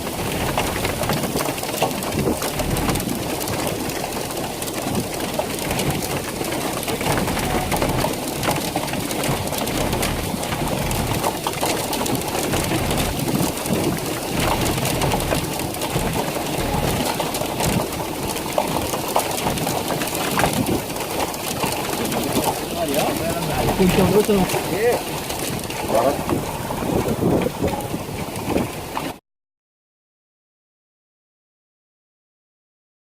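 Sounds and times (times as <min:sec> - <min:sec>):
low rumble: 0:00.0 - 0:19.8
heavy rain: 0:00.0 - 0:29.2.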